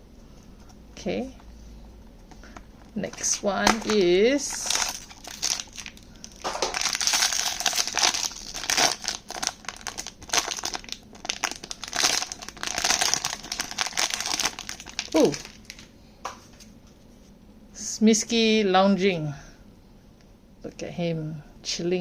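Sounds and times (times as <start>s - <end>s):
packaging crinkling: 2.3s - 15.9s.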